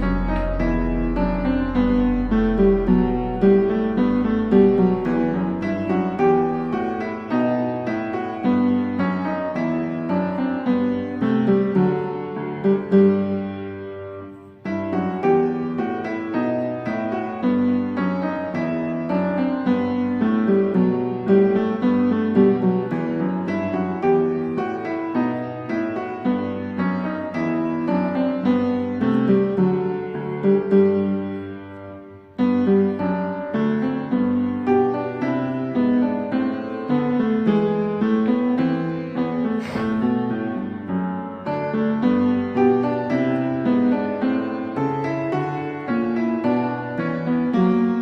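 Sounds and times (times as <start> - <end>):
gentle piano melody: 0.0 - 48.0.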